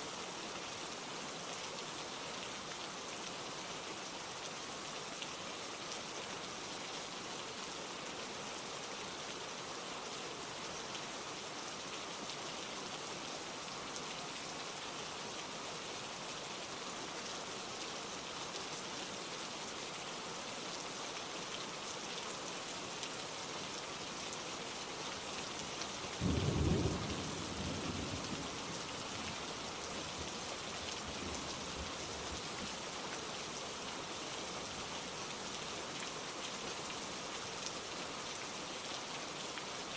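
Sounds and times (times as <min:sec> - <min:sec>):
steady rain falling: 0:00.0 - 0:39.9
low rumble of thunder: 0:26.2 - 0:28.8.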